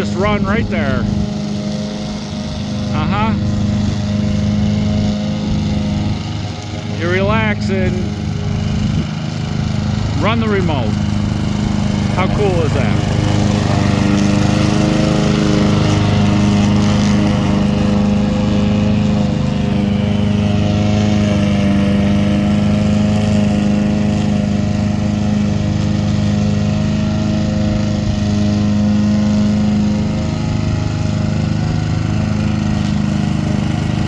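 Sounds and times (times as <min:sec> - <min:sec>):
lawn mower running: 0:00.0 - 0:34.0.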